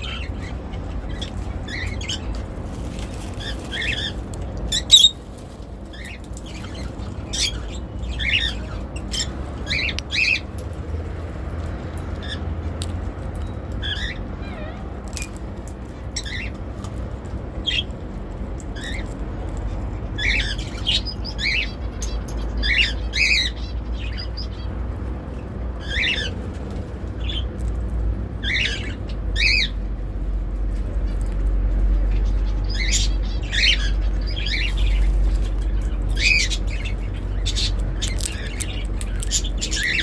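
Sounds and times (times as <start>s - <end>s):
parrot chirping and squawking: 0.0s - 2.4s, 3.0s - 5.3s, 5.9s - 10.5s, 12.1s - 12.5s, 13.8s - 16.6s, 18.8s - 24.7s, 25.8s - 26.4s, 28.4s - 29.8s, 32.1s - 40.0s.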